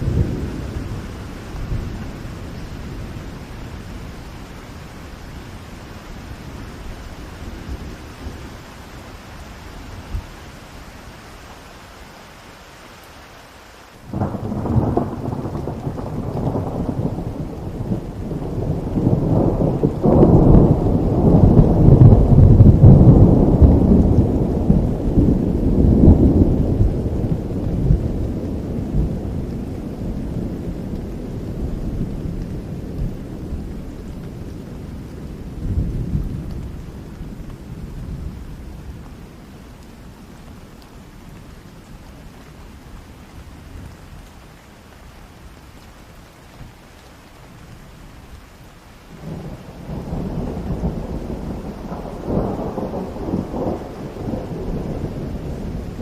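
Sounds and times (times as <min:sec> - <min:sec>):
thunder clap and rumble: 0:00.0 - 0:04.2, 0:14.1 - 0:40.4, 0:49.1 - 0:56.0
steady rain hiss: 0:00.0 - 0:56.0.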